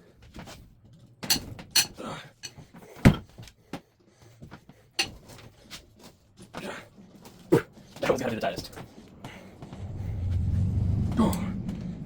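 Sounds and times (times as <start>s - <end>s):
wrench clanking on bolts: 1.2s - 2.6s.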